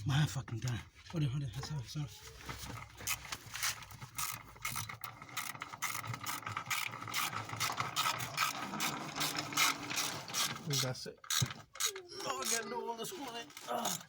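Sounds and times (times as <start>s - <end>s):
ratchet wrench clicking: 4.1s - 7.3s.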